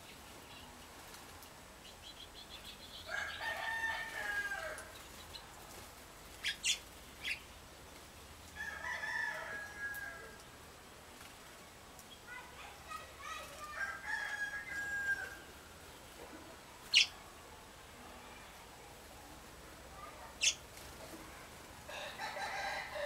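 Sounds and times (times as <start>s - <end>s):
rooster crowing: 3.1s - 4.9s, 8.6s - 10.4s, 13.8s - 15.4s, 21.9s - 23.0s
small bird chirps: 6.4s - 7.5s, 16.9s - 17.2s, 20.4s - 20.6s.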